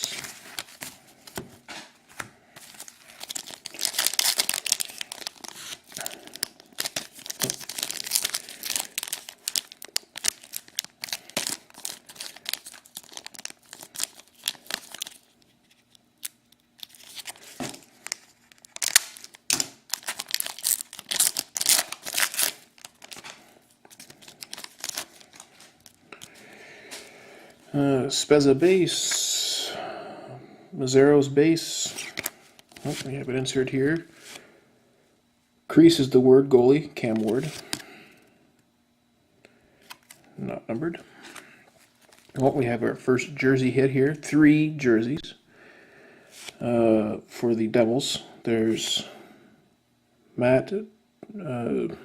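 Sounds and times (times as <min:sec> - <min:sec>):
wrappers crinkling: 0:02.5 - 0:27.7, 0:31.8 - 0:33.2, 0:41.2 - 0:42.5
card packs torn open: 0:02.6 - 0:27.1, 0:31.9 - 0:33.2, 0:37.1 - 0:37.9, 0:39.8 - 0:40.3, 0:41.2 - 0:42.4.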